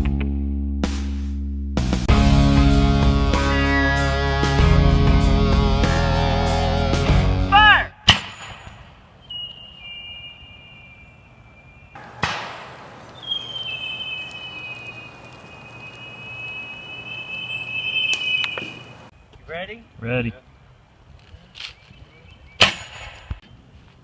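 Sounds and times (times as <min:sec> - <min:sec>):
heavy rock guitar music: 0:02.1 - 0:07.5
sharp crack: 0:08.0 - 0:08.9, 0:12.0 - 0:15.5, 0:22.6 - 0:23.4
thin high whistle: 0:09.2 - 0:19.0.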